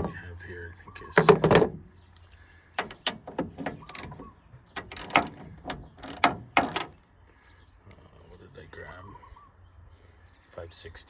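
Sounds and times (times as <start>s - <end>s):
hand tools clicking and clacking: 4.8s - 7.0s.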